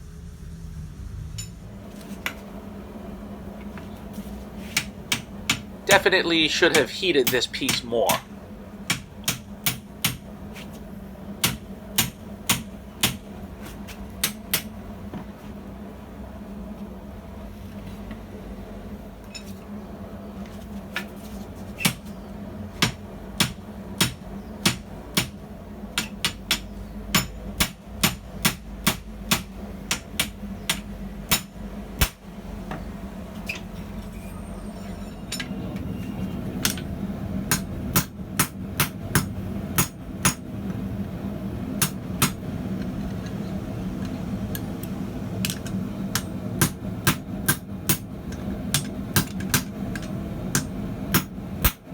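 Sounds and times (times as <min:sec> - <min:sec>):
steady low hum: 0:00.0 - 0:51.9
hammer striking hot steel on anvil: 0:04.7 - 0:05.7, 0:06.7 - 0:08.3, 0:08.9 - 0:10.2, 0:11.4 - 0:13.2, 0:22.8 - 0:25.4, 0:26.0 - 0:32.2, 0:37.5 - 0:40.4, 0:41.8 - 0:42.4, 0:45.4 - 0:51.9.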